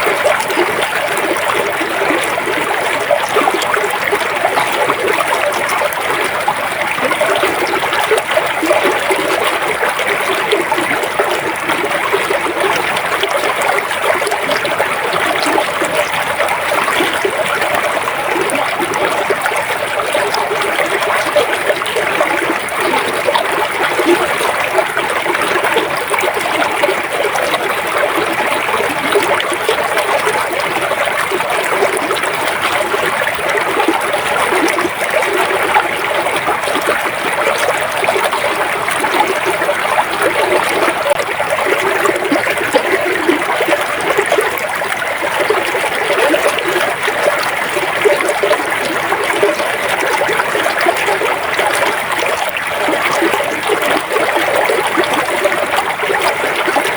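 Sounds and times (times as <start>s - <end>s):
river water rushing: 0.0s - 56.9s.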